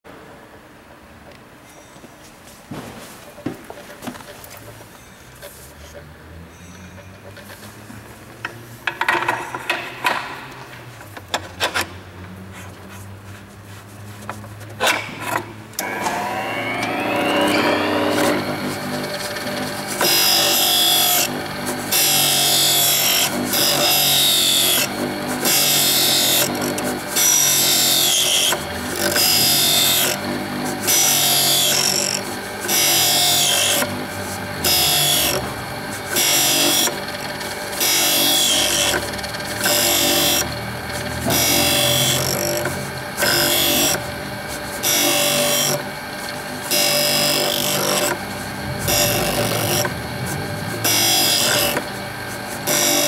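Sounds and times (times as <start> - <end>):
drill rasping against wheel: 15.8 - 53.0
grinding wheel hum: 15.8 - 53.0.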